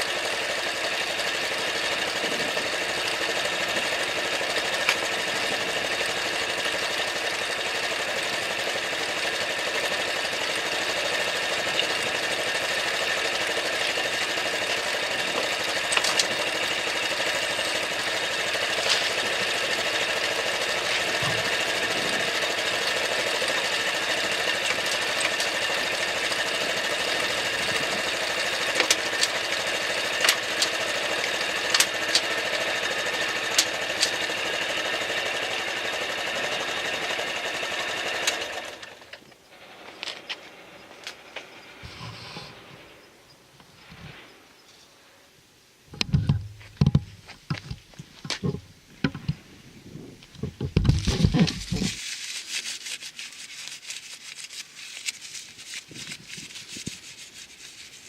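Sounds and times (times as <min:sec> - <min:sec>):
motorcycle engine idling: 0:00.0 - 0:43.4.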